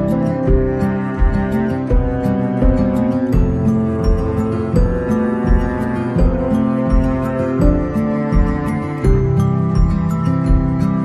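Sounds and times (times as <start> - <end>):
calm new-age instrumental music: 0.0 - 11.0.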